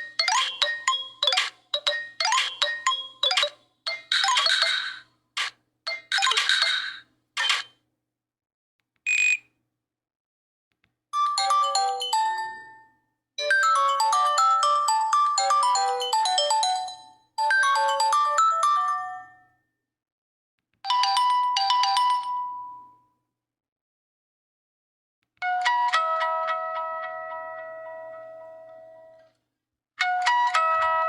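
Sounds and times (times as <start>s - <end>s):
phone ringtone melody: 0.0s - 5.0s, 11.2s - 12.8s, 13.4s - 19.4s.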